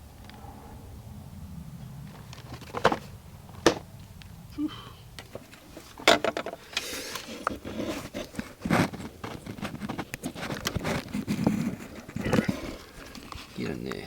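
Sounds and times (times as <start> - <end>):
hands handling parts and tools: 2.1 - 3.8, 5.2 - 14.0.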